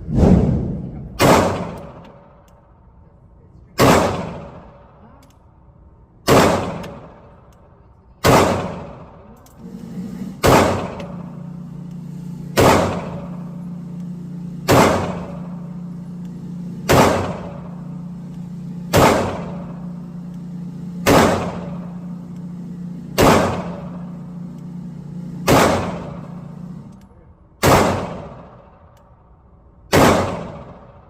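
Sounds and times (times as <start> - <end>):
steady low hum: 0.0 - 31.0
pistol shots: 1.2 - 2.4, 3.8 - 4.9, 6.2 - 7.4, 8.2 - 9.2, 10.4 - 11.2, 12.6 - 13.4, 14.6 - 15.6, 16.9 - 17.8, 18.9 - 19.9, 21.0 - 22.0, 23.2 - 24.0, 25.5 - 26.3, 27.6 - 28.8, 29.9 - 31.0.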